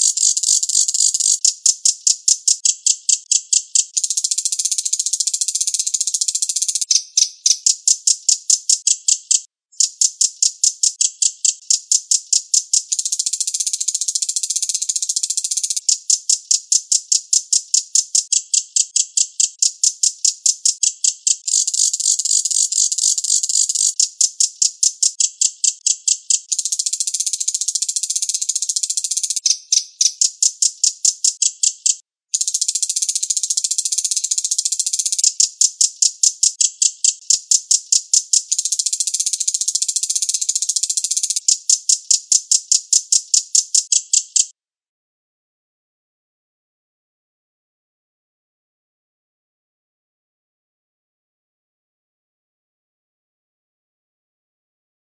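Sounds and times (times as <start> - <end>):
bird chattering trill: 0.0 - 44.5.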